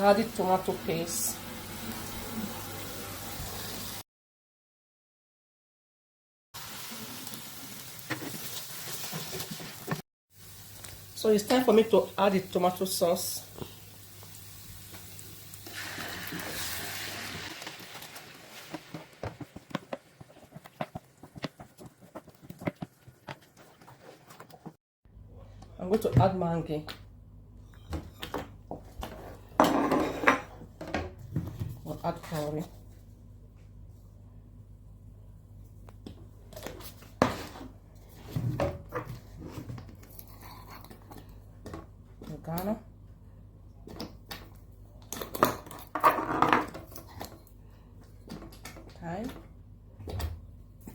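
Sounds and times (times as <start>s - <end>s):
sauce sizzling in hot oil: 6.6s - 19.3s.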